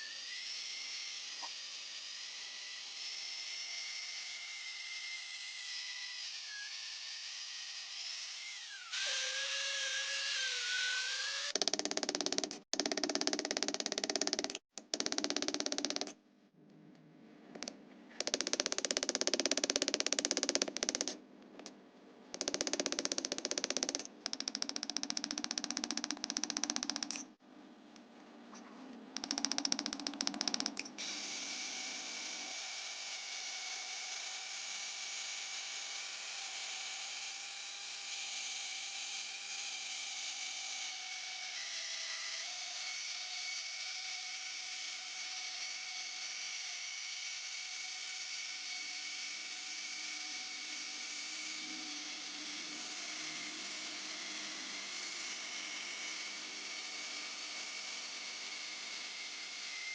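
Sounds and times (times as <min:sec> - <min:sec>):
electric power tool whining: 0:05.0 - 0:11.6.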